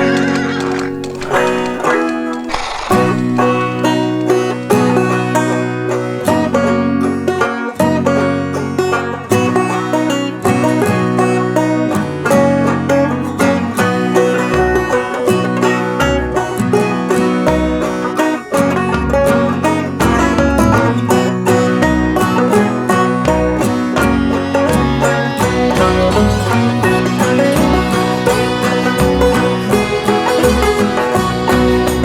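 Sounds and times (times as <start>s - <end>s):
upbeat plucked-string tune: 0.0s - 32.0s
deep bass notes: 18.7s - 32.0s.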